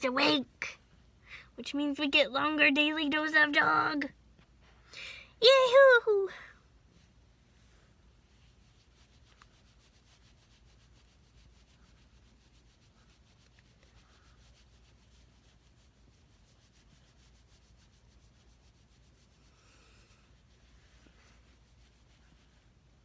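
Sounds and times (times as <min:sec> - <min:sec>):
faint soft rubbing: 0:06.8 - 0:23.0.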